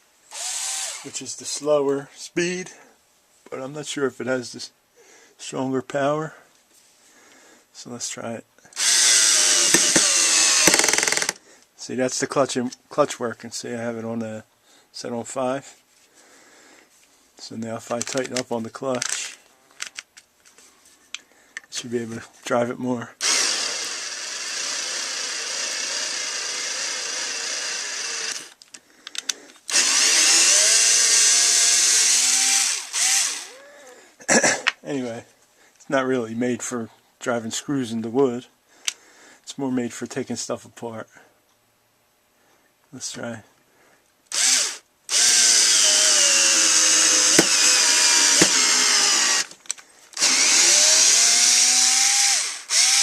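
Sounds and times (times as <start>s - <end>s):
cordless screwdriver driving screw: 0.3s - 1.1s, 8.8s - 11.4s, 23.2s - 33.5s, 44.3s - 49.6s, 50.2s - 53.0s.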